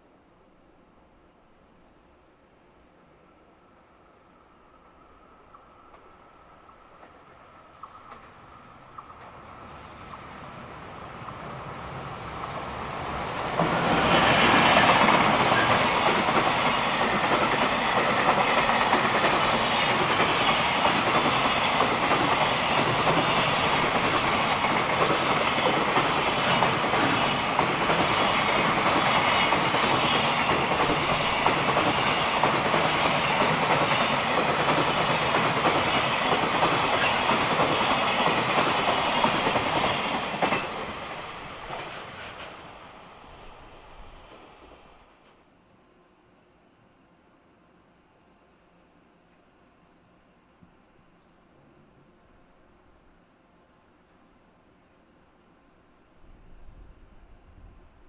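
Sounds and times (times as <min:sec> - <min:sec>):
freight train rumble: 0:04.3 - 0:45.5.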